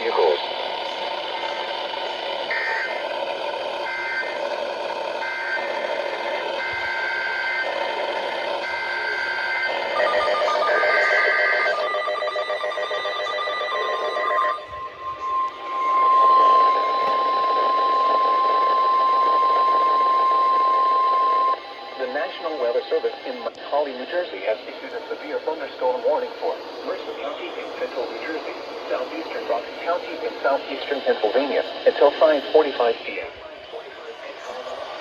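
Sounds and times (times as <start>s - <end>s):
steady warning alarm tone: 0.0s - 33.4s
screeching digital data tones: 8.6s - 23.5s.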